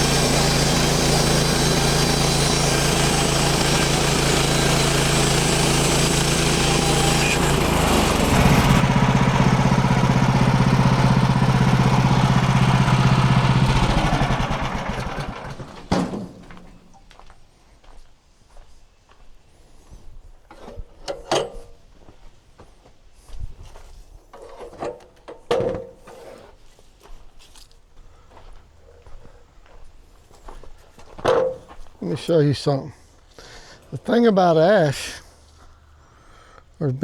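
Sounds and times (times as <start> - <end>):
gas engine running and winding down: 0.0 - 16.9.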